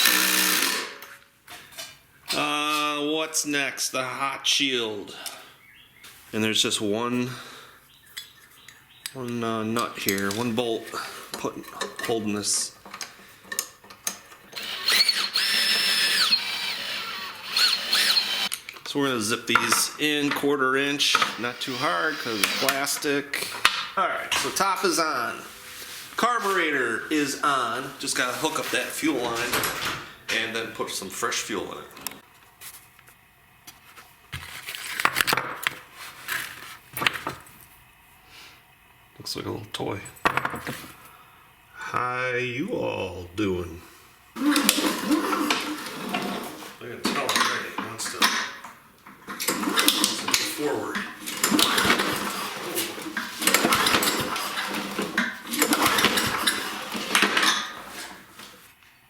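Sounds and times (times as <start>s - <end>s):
mower engine cranking without starting: 0.0s - 1.0s, 10.0s - 18.6s, 21.0s - 23.6s, 44.4s - 58.4s
tools and parts clicking and scraping: 10.0s - 18.9s, 21.1s - 23.9s, 34.4s - 37.6s, 44.4s - 58.6s.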